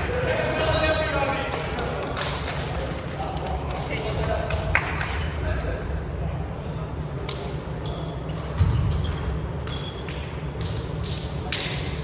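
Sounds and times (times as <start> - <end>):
shoes squeaking on gym floor: 6.6 - 10.0.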